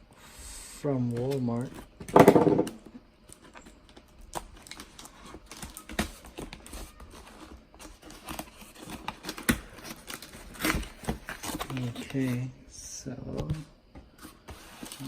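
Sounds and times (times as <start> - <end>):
packaging crinkling and tearing: 3.3 - 12.4.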